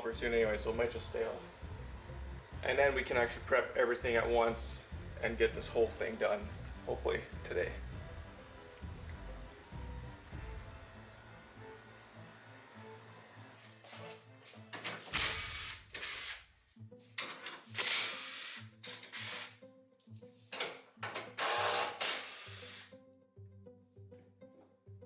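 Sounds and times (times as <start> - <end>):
background music with bass line: 0.0 - 11.9
loud hissing bursts: 15.2 - 16.5, 17.9 - 19.6, 21.8 - 22.9.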